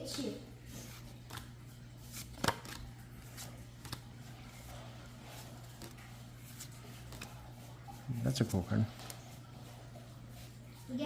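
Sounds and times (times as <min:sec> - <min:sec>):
low steady hum: 0:00.0 - 0:11.0
cards rustling and clicking: 0:00.8 - 0:09.4
card snap: 0:02.2 - 0:02.8.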